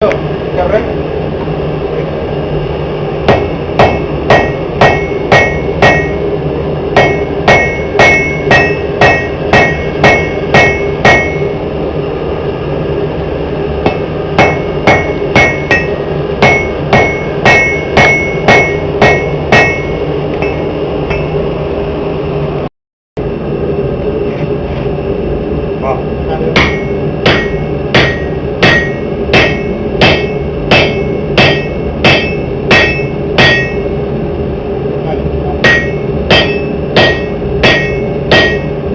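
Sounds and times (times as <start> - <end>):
hammer ringing on anvil: 3.3 - 6.3, 7.0 - 11.6, 13.8 - 21.4, 26.5 - 33.9, 35.6 - 38.8.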